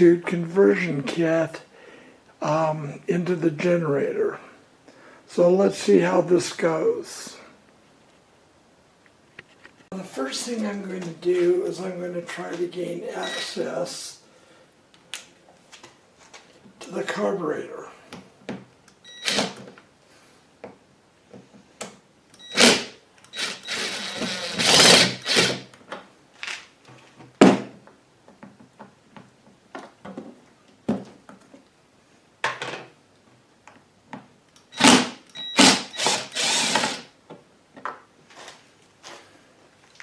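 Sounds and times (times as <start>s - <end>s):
scraping or whirring tool: 22.5s - 25.6s, 34.8s - 37.0s.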